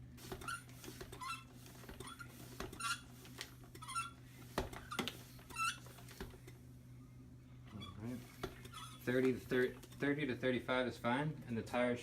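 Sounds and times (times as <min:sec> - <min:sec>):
bicycle pump squeaking: 0:00.3 - 0:06.3, 0:07.8 - 0:09.3.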